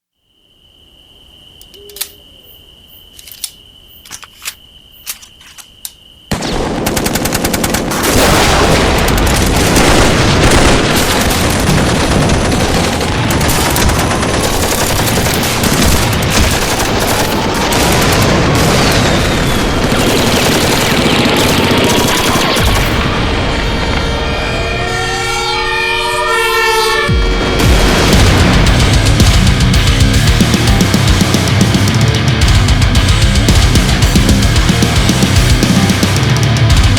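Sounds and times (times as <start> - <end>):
machine-gun fire: 6.3 - 23.2, 27.6 - 36.9
gunshots: 6.3 - 23.5, 27.4 - 32.0.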